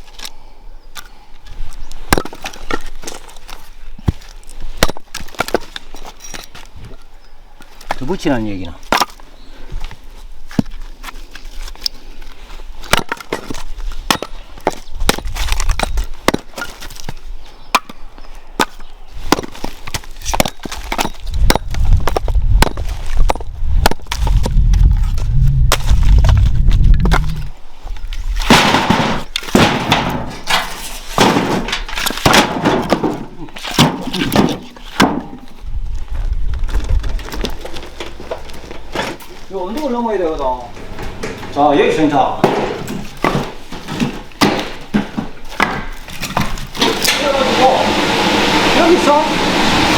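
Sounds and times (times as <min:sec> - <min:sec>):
firewood cracking and snapping: 0:09.9 - 0:17.9, 0:28.2 - 0:39.9
low rumble: 0:24.7 - 0:27.5.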